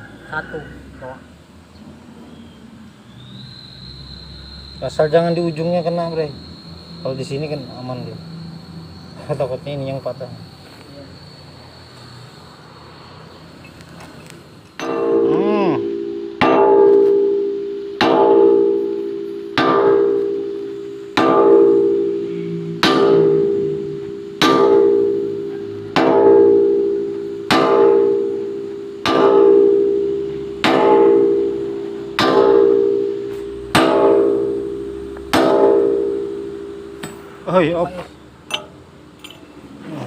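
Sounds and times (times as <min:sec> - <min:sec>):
sledgehammer striking metal: 0:14.8 - 0:37.6.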